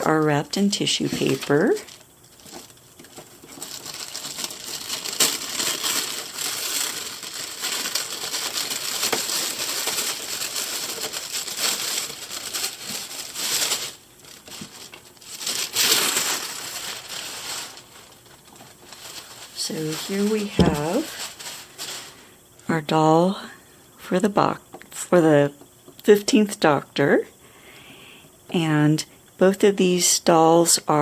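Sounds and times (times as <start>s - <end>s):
tissue paper rustling: 1.0s - 22.2s.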